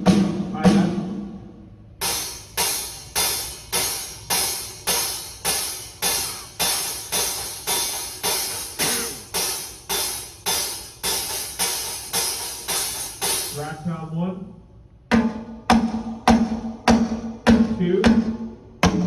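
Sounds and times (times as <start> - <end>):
cymbal hits ringing: 2.0 - 13.6.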